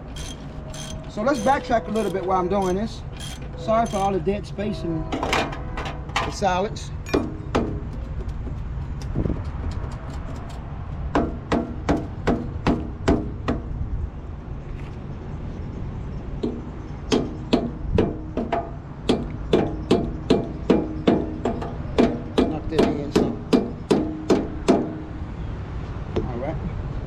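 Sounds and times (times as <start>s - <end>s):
hammer blows on metal: 0.0s - 8.2s.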